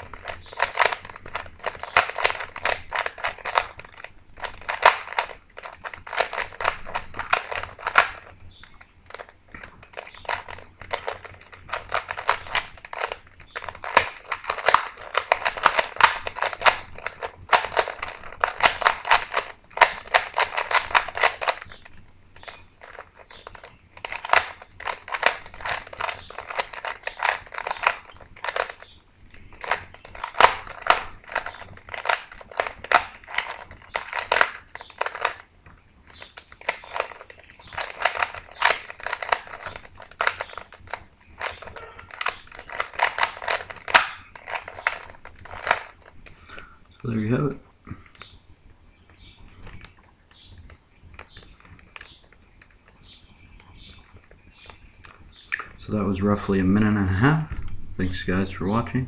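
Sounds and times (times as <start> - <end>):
puzzle cube layers clicking: 0.0 - 46.7.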